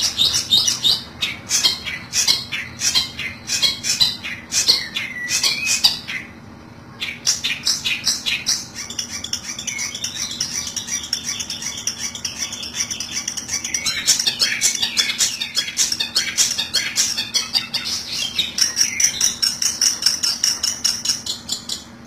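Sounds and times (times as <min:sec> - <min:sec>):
shrike chattering squawks: 0:00.0 - 0:22.0.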